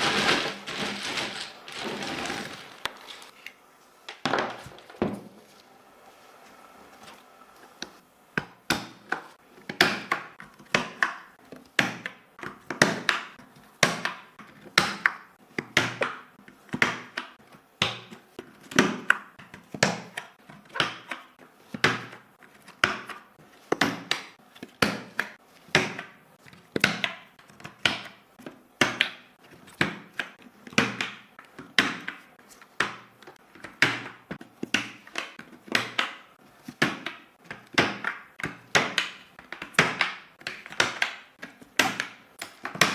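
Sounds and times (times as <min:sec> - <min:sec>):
plastic keyboard clicks and knocks: 0:28.8 - 0:42.9.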